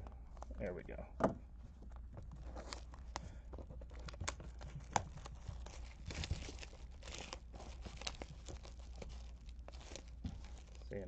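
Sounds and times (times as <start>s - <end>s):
shrink-wrap tearing and crinkling: 2.4s - 3.2s, 3.8s - 11.0s.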